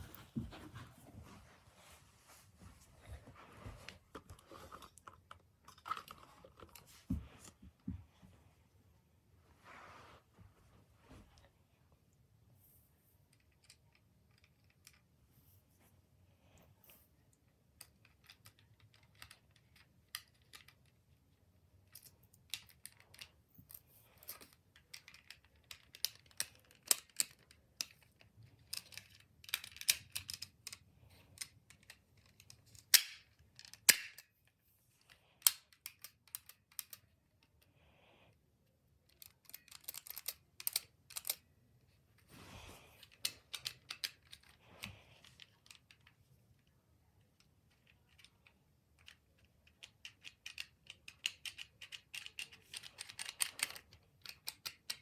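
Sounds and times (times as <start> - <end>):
plastic parts clicking and snapping: 24.3 - 30.8, 31.4 - 34.3, 43.0 - 46.2, 49.0 - 55.0.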